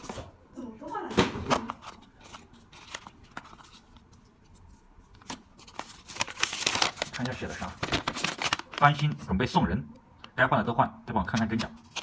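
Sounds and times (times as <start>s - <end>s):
parcel packaging rustling: 1.5s - 9.4s
packaging clicks: 5.7s - 9.1s.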